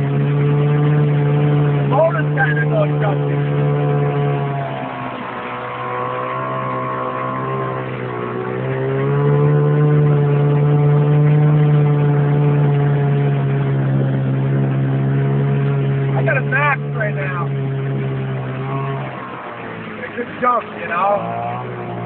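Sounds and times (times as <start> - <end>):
boat motor running: 0.0 - 22.0.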